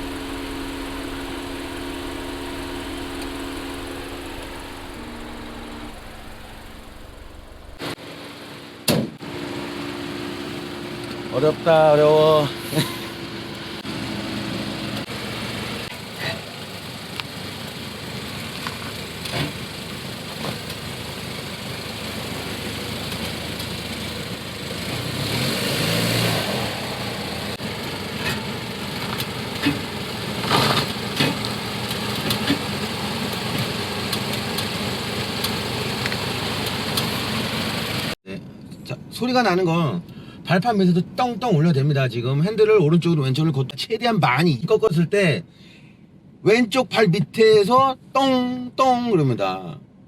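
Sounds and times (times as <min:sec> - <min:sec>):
car engine idling: 0:00.0 - 0:39.0.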